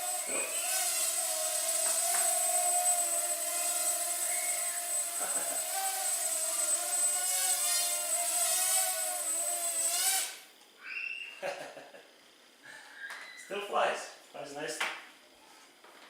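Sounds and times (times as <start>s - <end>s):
quadcopter motors buzzing: 0.0s - 10.5s.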